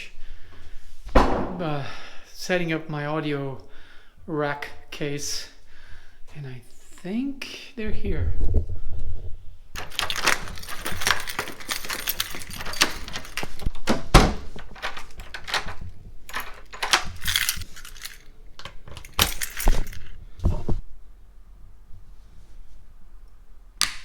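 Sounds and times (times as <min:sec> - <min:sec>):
small metal parts clinking: 0:09.8 - 0:20.7
packaging rustling: 0:09.8 - 0:20.8
parcel clatter: 0:09.8 - 0:20.8.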